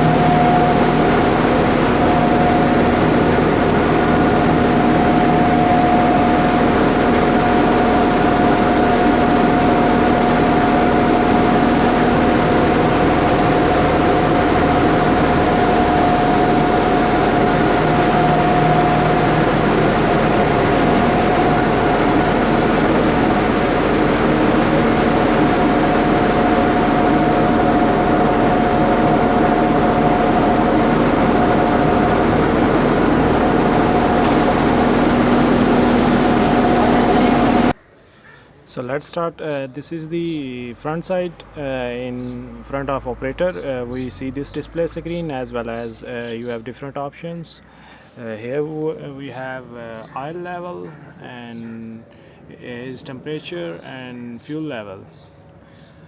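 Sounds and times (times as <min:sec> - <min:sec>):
diesel engine running: 0:00.0 - 0:37.8, 0:38.8 - 0:53.8
high whine: 0:00.0 - 0:37.8.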